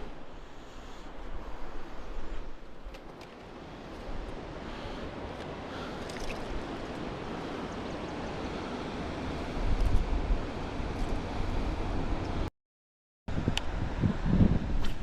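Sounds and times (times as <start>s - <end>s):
wind buffeting microphone: 1.1s - 12.2s, 13.3s - 15.0s.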